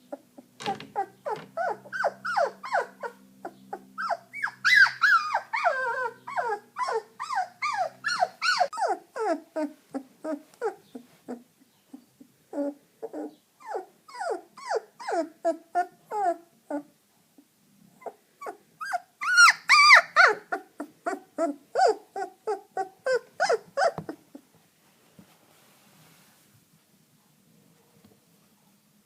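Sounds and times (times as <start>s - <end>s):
puppy squealing: 0.1s - 11.4s, 12.5s - 16.9s, 18.0s - 24.4s
puppy whimpering yips: 0.1s - 11.4s, 12.5s - 16.9s, 18.0s - 24.4s.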